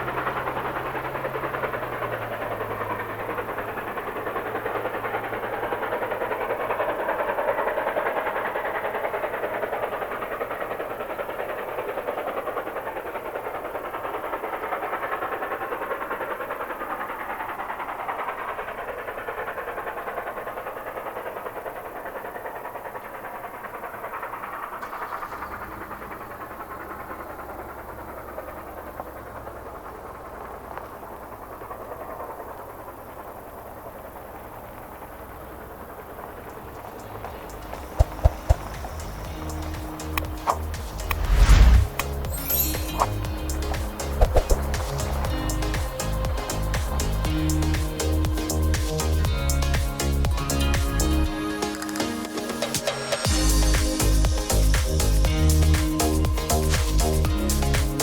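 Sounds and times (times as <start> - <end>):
train rumbling on rails: 0.0 - 51.6, 52.2 - 58.0.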